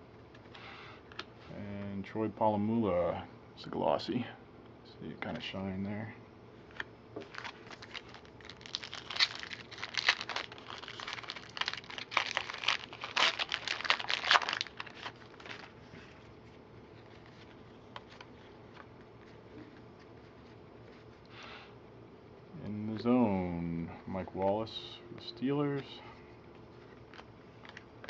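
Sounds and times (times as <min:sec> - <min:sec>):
plastic wrapper crinkling: 0:07.2 - 0:15.8.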